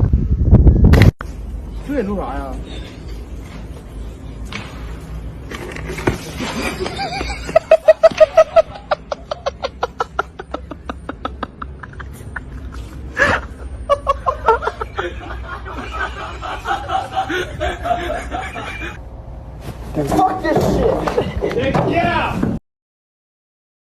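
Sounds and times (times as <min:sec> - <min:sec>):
person laughing hard: 0:06.4 - 0:19.0.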